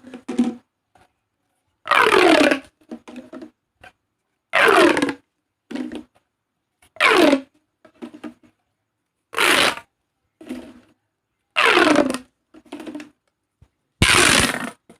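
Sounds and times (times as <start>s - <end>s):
plastic pop tubes buzzing: 11.6s - 13.1s, 14.0s - 14.9s.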